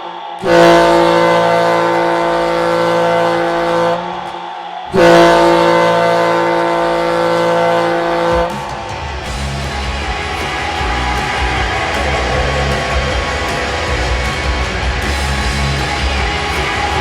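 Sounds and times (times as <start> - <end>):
hockey goal horn: 0.4 - 4.2, 4.9 - 8.5
rock song with electric guitar: 8.5 - 17.0.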